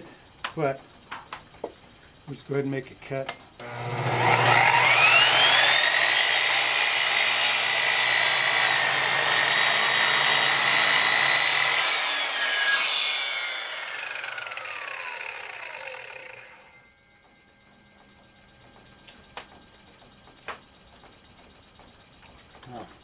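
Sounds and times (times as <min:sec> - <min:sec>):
saw blade cutting: 0:03.6 - 0:16.8
miter saw motor whining: 0:03.6 - 0:16.9.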